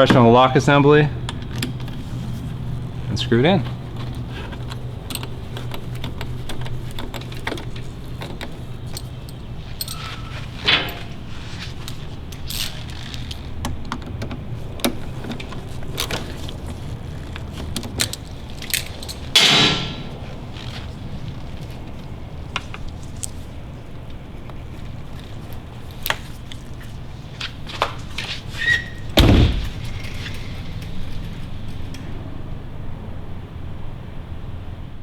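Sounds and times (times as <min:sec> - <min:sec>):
handling noises: 0:00.0 - 0:32.2
small metallic clicks and rattles: 0:03.6 - 0:20.9
steady low hum: 0:28.9 - 0:34.0.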